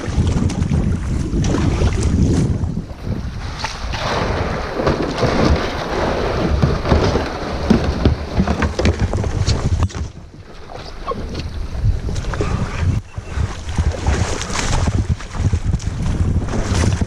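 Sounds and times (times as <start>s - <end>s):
paddle splashing water: 0.0s - 17.0s
wind rumble on microphone: 0.0s - 17.0s
small knocks: 6.6s - 10.2s.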